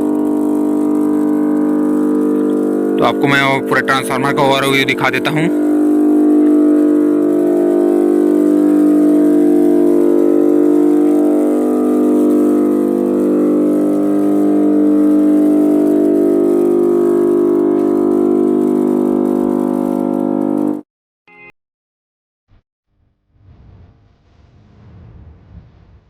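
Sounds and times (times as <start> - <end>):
power transformer humming: 0.0 - 20.8.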